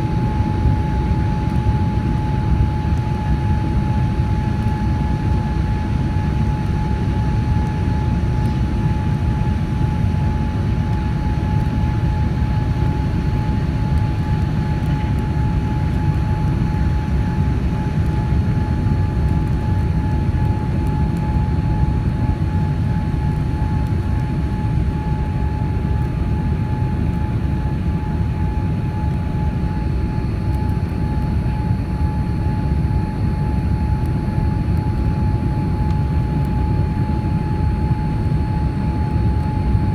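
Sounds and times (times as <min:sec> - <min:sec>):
low rumble of engines and airflow: 0:00.0 - 0:39.9
steady high whine: 0:00.0 - 0:39.9.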